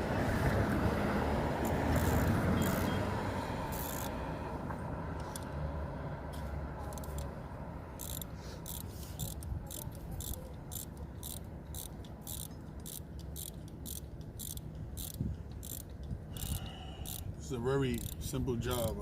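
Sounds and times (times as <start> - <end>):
ratchet wrench clicking: 1.6 - 3.0, 3.6 - 4.2, 5.2 - 5.6, 6.8 - 7.3, 7.9 - 19.0.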